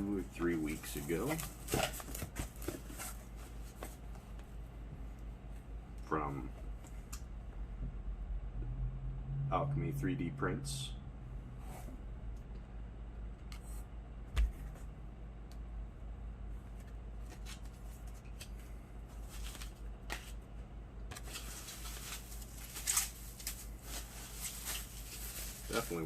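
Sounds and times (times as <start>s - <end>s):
bubble wrap crinkling: 21.2s - 26.0s.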